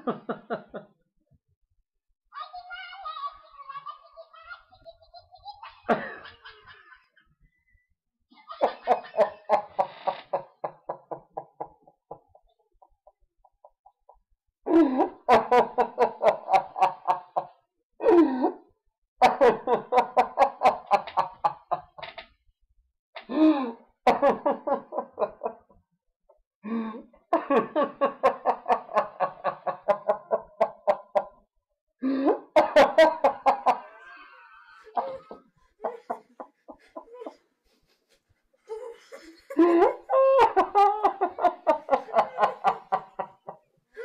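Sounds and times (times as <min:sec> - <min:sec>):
people laughing hard: 0:00.0 - 0:00.9, 0:05.6 - 0:07.2, 0:08.4 - 0:12.4, 0:14.7 - 0:17.5, 0:19.2 - 0:22.1, 0:24.1 - 0:25.6, 0:27.4 - 0:31.4, 0:32.2 - 0:44.0.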